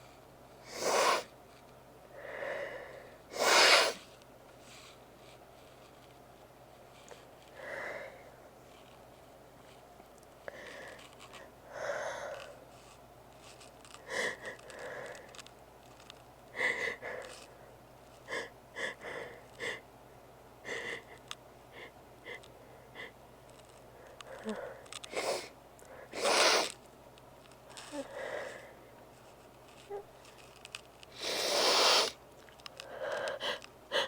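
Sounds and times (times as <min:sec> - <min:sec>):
sniffs through congested nose: 0:00.6 - 0:01.4, 0:03.3 - 0:05.0, 0:25.1 - 0:26.8, 0:31.1 - 0:32.2
loud sneeze: 0:00.7 - 0:01.3, 0:03.4 - 0:04.0, 0:26.2 - 0:26.7, 0:31.2 - 0:32.2.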